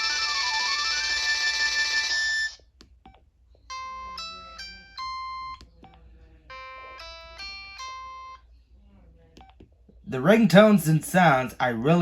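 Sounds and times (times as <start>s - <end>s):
polyphonic ringtone: 0.0s - 2.6s, 3.7s - 8.5s.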